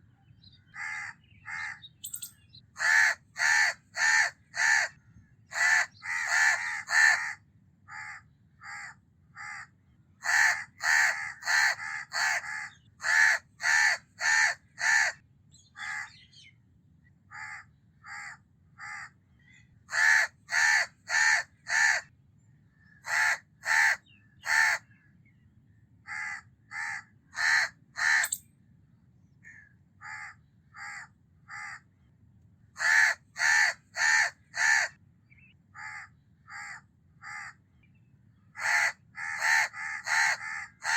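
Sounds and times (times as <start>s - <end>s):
crows cawing: 0.7s - 2.2s, 2.8s - 15.2s, 15.8s - 16.2s, 17.3s - 19.2s, 19.9s - 22.1s, 22.9s - 24.8s, 26.0s - 28.4s, 29.4s - 31.9s, 32.8s - 35.0s, 35.8s - 37.6s, 38.6s - 40.9s.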